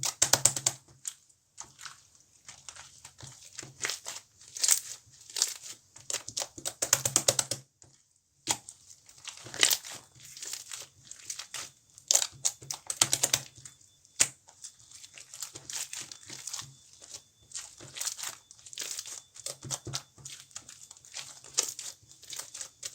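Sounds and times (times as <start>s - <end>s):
slime squished by hand crackling: 8.4s - 22.9s.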